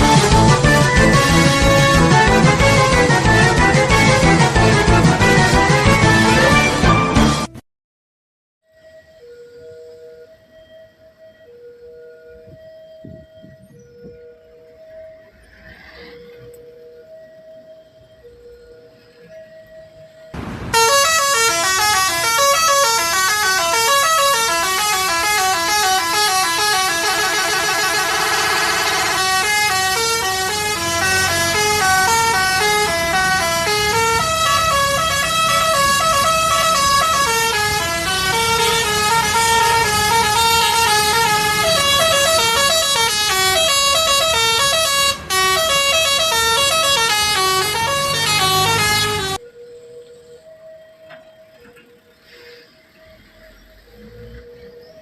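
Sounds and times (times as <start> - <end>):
musical horn melody: 0.0 - 7.6, 20.4 - 49.4.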